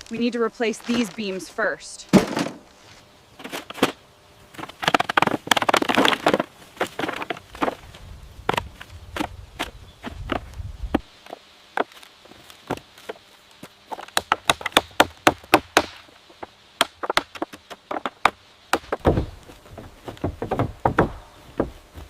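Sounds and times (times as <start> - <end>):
tools knocking on wood: 17.0 - 21.8
heavy deep thuds: 18.2 - 22.0.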